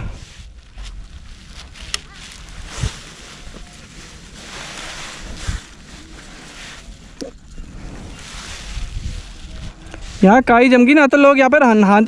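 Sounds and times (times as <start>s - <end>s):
wind gusting across microphone: 0.0s - 11.4s.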